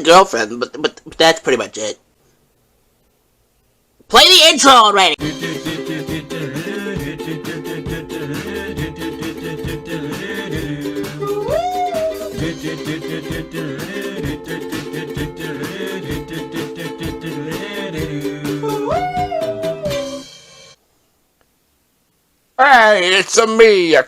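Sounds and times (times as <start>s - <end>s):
theme music with steady beat: 5.2s - 20.7s
voice sliding up in pitch: 11.2s - 12.4s.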